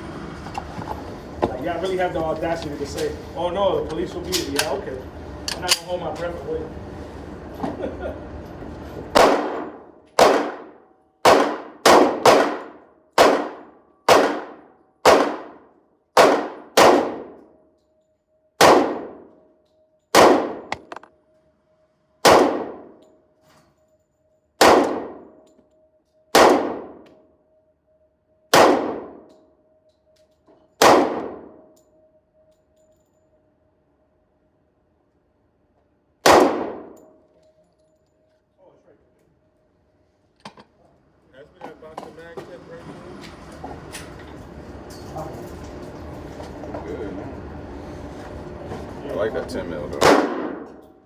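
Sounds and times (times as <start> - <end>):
handgun shots: 9.2 - 15.6, 16.2 - 17.4, 18.6 - 19.3, 20.2 - 21.1, 22.2 - 23.0, 24.6 - 25.4, 26.4 - 27.1, 28.6 - 29.3, 30.8 - 31.6, 36.2 - 37.1, 50.0 - 50.8.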